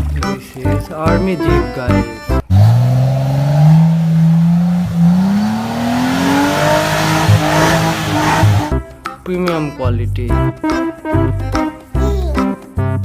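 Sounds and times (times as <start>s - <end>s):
car engine accelerating: 2.4s - 8.7s.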